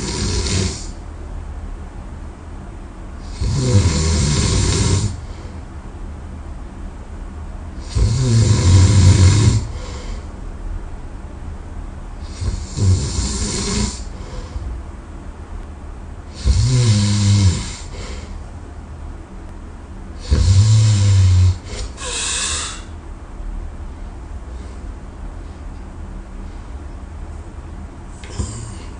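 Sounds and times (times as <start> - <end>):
man snoring loudly: 0.0 - 0.9, 3.2 - 5.2, 7.8 - 10.0, 12.2 - 14.1, 16.3 - 18.1, 20.2 - 22.9
short breath: 21.7 - 23.0.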